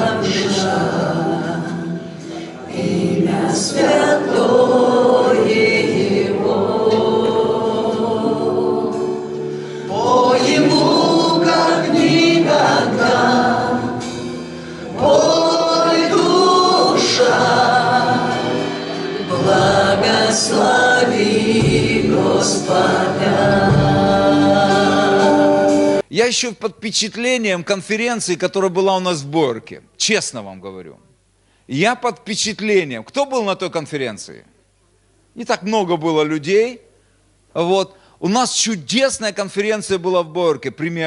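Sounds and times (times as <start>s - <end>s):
group singing worship song: 0.0s - 26.0s.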